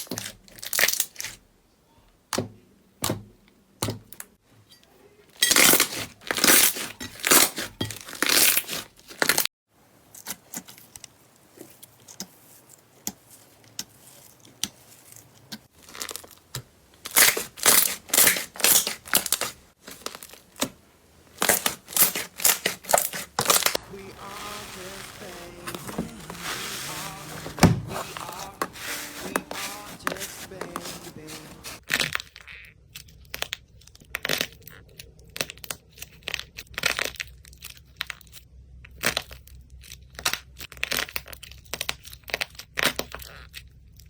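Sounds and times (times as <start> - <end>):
faint slime squishing: 10.0 - 44.0.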